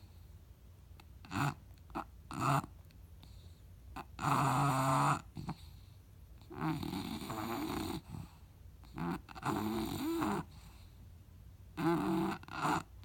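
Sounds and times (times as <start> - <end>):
loud rattling snores: 1.3 - 1.6, 2.3 - 2.7, 4.1 - 5.6, 6.5 - 8.2, 9.0 - 10.5, 11.8 - 13.0.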